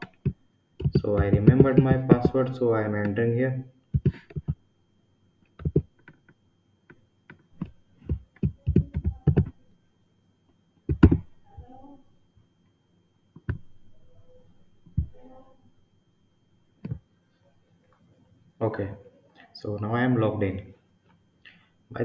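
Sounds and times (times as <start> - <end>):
computer keyboard keystrokes: 5.6 - 6.3, 7.3 - 9.5.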